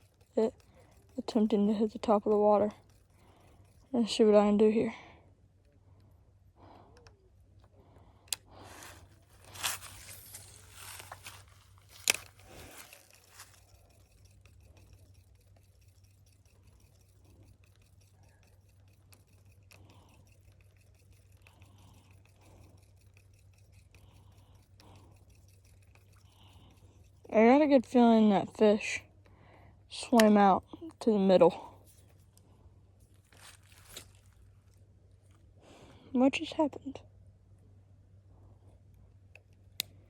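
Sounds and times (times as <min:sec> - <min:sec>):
faint low hum: 0:00.0 - 0:40.0
scraping rustles: 0:08.6 - 0:17.9, 0:33.0 - 0:34.8.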